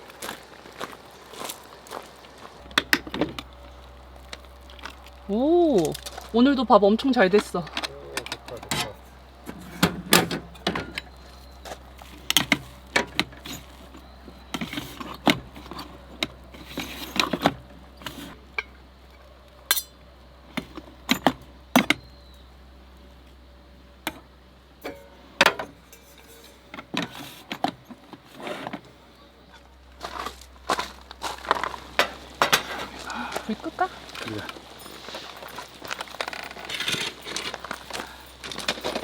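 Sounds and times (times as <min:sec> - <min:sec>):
metal utensils clinking on cookware: 0:19.7 - 0:20.0, 0:24.8 - 0:27.4, 0:31.6 - 0:33.1.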